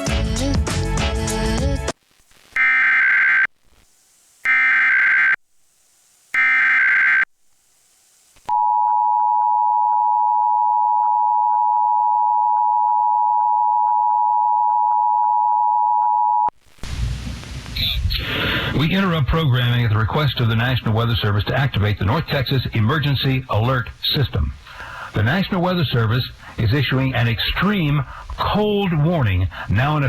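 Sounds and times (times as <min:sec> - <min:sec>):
warbling data tone bursts: 0:06.4 - 0:07.3.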